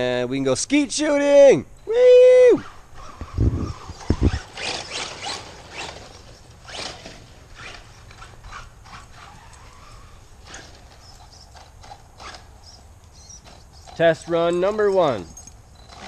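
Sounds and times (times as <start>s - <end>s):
toy truck motor whine: 2.7s - 14.4s
scraping rattles on dirt: 2.7s - 16.0s.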